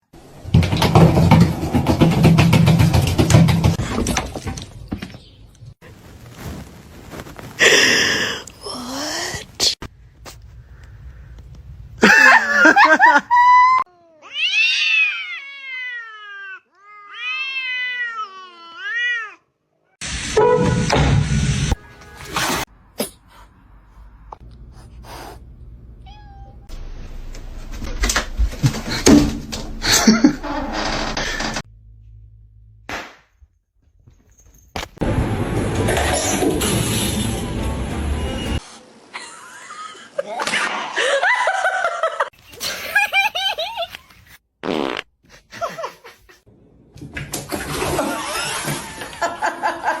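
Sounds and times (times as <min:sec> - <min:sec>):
knocks and thumps: 0:00.4 - 0:05.3, 0:27.8 - 0:31.6
person laughing: 0:12.0 - 0:13.8, 0:29.8 - 0:31.4, 0:39.1 - 0:44.0, 0:45.2 - 0:46.4
cat meowing: 0:13.9 - 0:19.4, 0:26.0 - 0:26.7.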